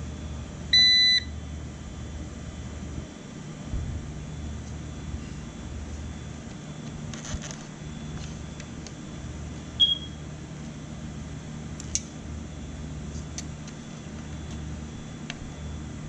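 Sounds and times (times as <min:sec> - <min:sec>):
ups low hum: 0:00.0 - 0:16.0
short high beep: 0:00.8 - 0:01.3
sharp click: 0:11.8 - 0:12.2.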